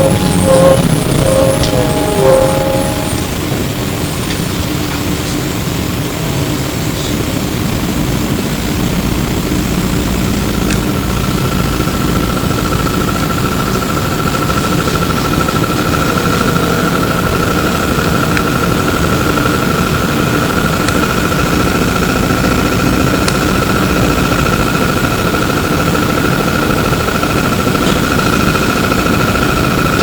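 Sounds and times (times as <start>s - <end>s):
high-pitched whine: 0.0s - 4.3s
low trolleybus rumble: 0.0s - 30.0s.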